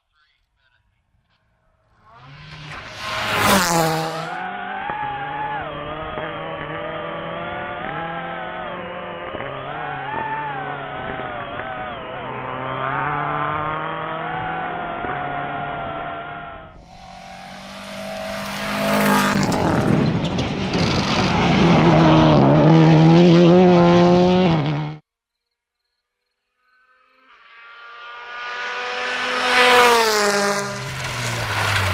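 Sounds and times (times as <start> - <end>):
rally car engine revving: 2.0 - 25.0, 27.3 - 31.9
tyres on gravel: 30.8 - 31.9.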